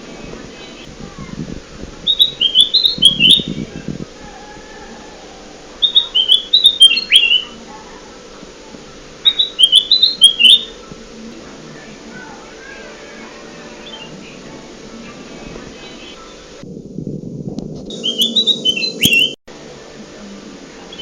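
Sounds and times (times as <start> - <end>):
low background hum: 0.0 - 21.0
bird whistling song: 2.0 - 3.9, 5.8 - 7.6, 9.2 - 10.9, 13.8 - 14.4, 17.9 - 19.4.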